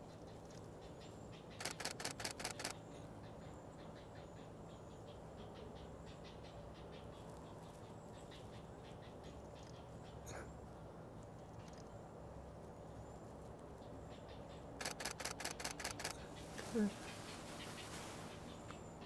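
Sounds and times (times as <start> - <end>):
faint bird chirps: 0.3 - 10.6, 13.9 - 19.0
camera shutter burst: 1.6 - 2.8, 14.8 - 16.2.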